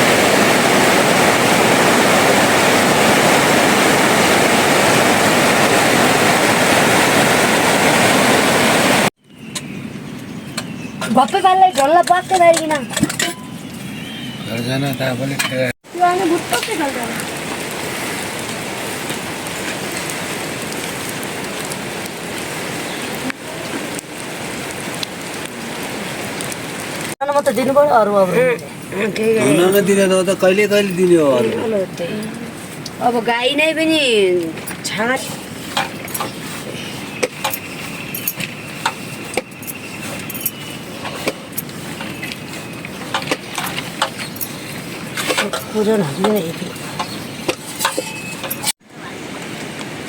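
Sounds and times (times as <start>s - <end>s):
metal clinking and jangling: 37.5s - 38.5s, 39.6s - 40.6s.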